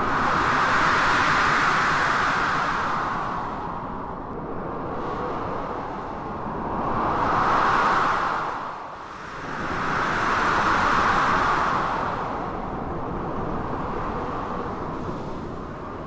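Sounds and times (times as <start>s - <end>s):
blizzard wind: 0.0s - 16.0s.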